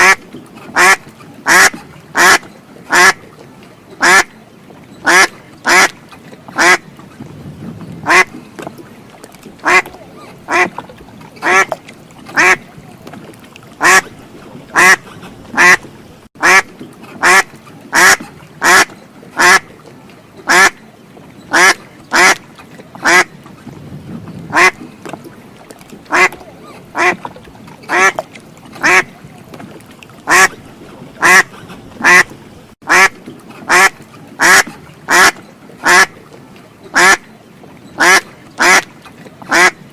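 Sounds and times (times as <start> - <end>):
duck quacking: 0.0 - 0.2, 0.8 - 3.2, 4.0 - 4.3, 5.0 - 6.0, 6.6 - 6.8, 8.0 - 8.3, 9.6 - 10.8, 11.4 - 11.8, 12.4 - 12.7, 13.8 - 14.1, 14.7 - 15.0, 15.6 - 19.6, 20.5 - 20.8, 21.5 - 22.4, 23.0 - 23.3, 24.5 - 24.8, 26.1 - 26.4, 27.0 - 27.2, 27.9 - 28.2, 28.8 - 29.1, 30.3 - 30.5, 31.2 - 32.3, 32.9 - 33.1, 33.7 - 36.1, 37.0 - 37.2, 38.0 - 38.9, 39.5 - 39.8.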